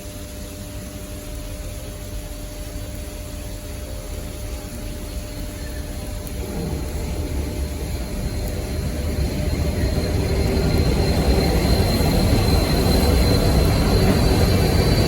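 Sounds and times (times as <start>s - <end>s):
freight train rumble: 3.9s - 15.0s.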